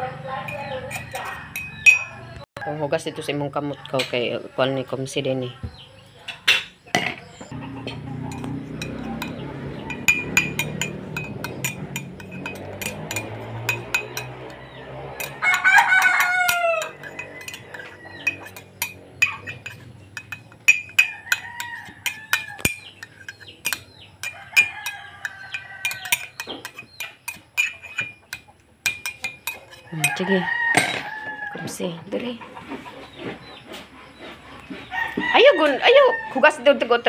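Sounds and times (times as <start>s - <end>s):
rooster crowing: 14.0s - 18.6s, 21.0s - 22.8s, 24.2s - 26.4s, 29.8s - 31.9s, 34.9s - 36.9s.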